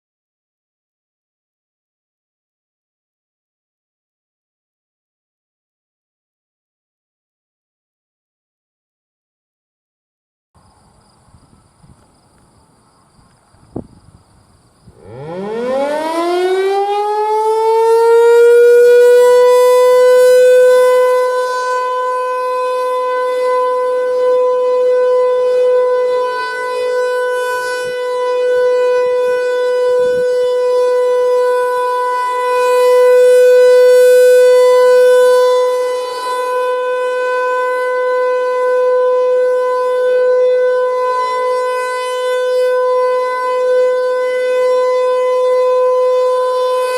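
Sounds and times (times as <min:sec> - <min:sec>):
rotating warning siren: 0:14.8 - 0:46.9.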